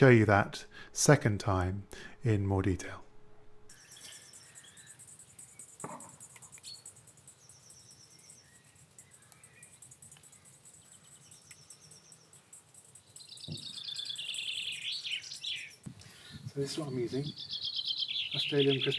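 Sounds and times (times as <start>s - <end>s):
faint bird chirps: 3.7s - 18.9s
insects chirping: 3.7s - 18.9s.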